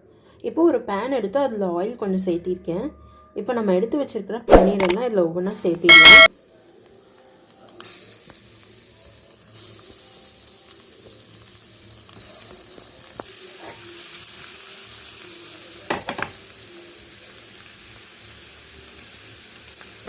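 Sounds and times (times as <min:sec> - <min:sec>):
cheese sizzling in hot oil: 0:05.5 - 0:20.0.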